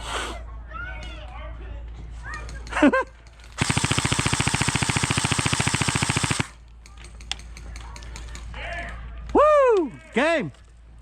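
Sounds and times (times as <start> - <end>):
airsoft gun full-auto burst: 3.6 - 6.6.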